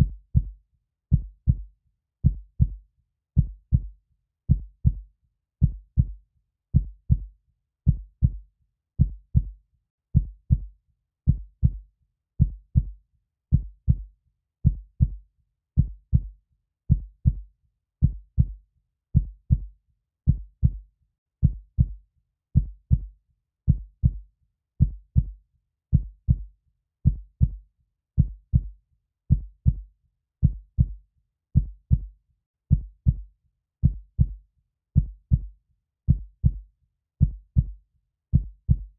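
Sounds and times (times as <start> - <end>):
heartbeat thumps: 0.0 - 0.5, 1.1 - 1.6, 2.2 - 2.8, 6.8 - 7.3, 7.9 - 8.4, 9.0 - 9.5, 11.3 - 11.8, 12.4 - 12.9, 13.5 - 14.0, 14.7 - 15.2, 18.0 - 18.6, 19.2 - 19.7, 20.3 - 20.8, 22.6 - 23.1, 23.7 - 24.2, 24.8 - 25.3, 25.9 - 26.4, 27.1 - 27.6, 28.2 - 28.7, 29.3 - 29.8, 30.4 - 31.0, 31.6 - 32.1, 32.7 - 33.2, 33.8 - 34.4, 35.0 - 35.5, 36.1 - 36.6, 37.2 - 37.8, 38.4 - 38.9.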